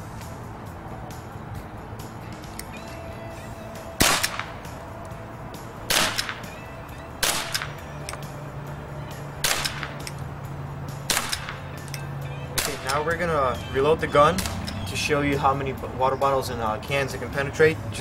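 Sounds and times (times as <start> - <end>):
air pistol shots: 4.0 - 4.7, 5.9 - 6.6, 7.2 - 8.3, 9.4 - 10.2, 11.1 - 11.8, 12.6 - 13.1.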